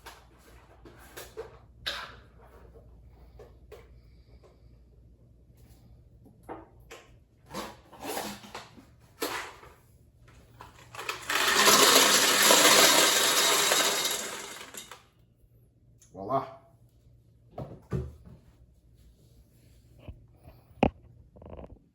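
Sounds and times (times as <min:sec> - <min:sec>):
candy pouring into vending machine: 0:10.6 - 0:15.0.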